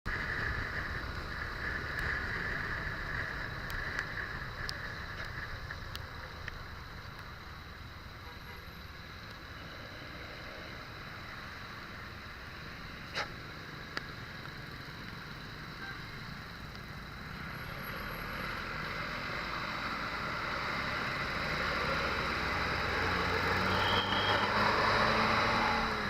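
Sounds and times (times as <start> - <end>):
road traffic rushing by: 0.1 - 26.0
faint clicks: 3.1 - 7.3.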